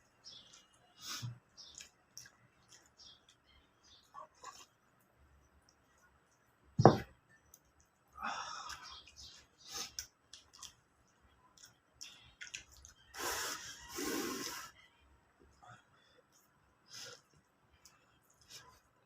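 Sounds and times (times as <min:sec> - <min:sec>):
person chewing: 0:00.4 - 0:03.4, 0:09.8 - 0:10.8.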